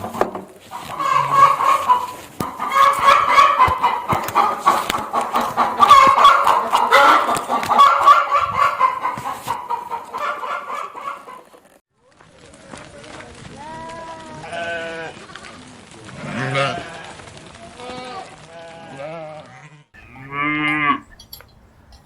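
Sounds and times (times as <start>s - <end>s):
chickens clucking: 0.0s - 11.8s.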